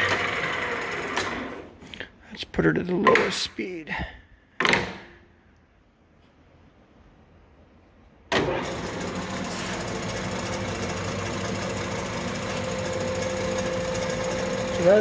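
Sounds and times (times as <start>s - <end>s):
lathe gears whirring: 0.0s - 1.7s, 8.3s - 15.0s
lathe motor hum: 0.0s - 1.7s, 8.4s - 15.0s.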